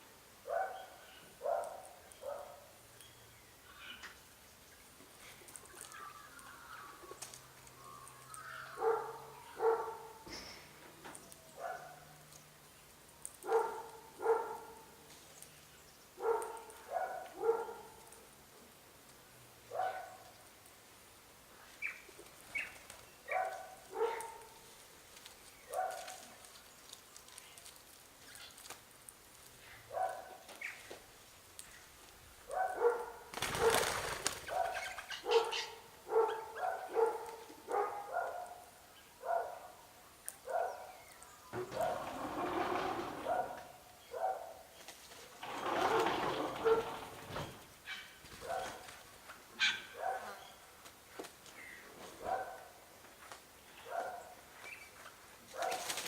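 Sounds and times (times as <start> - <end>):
dog barking: 0.5 - 2.7, 8.8 - 10.3, 11.6 - 12.1, 13.4 - 14.9, 16.2 - 18.0, 19.7 - 20.2, 23.3 - 24.6, 25.7 - 26.2, 29.9 - 30.4, 32.5 - 33.9, 34.5 - 39.8, 40.4 - 40.9, 41.6 - 42.3, 43.2 - 44.6, 45.8 - 47.0, 48.4 - 48.8, 49.6 - 50.4, 52.2 - 52.8, 53.8 - 54.4, 55.5 - 55.9
birds giving harsh calls: 5.2 - 12.0, 32.8 - 37.2, 40.6 - 44.2
noisy rustle: 41.2 - 43.9, 44.7 - 49.5, 54.4 - 56.0.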